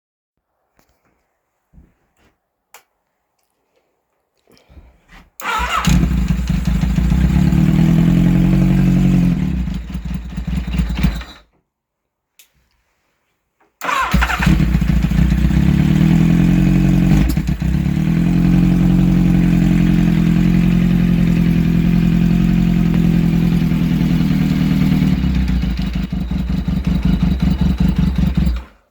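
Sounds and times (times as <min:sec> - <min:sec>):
motorcycle engine idling unevenly: 0:05.4 - 0:11.4, 0:13.9 - 0:28.9.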